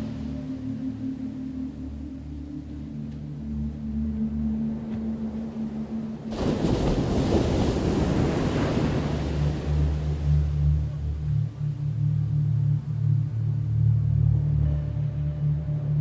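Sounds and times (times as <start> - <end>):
low ambient drone: 0.0 - 16.0
ocean wave crashing: 6.2 - 10.6.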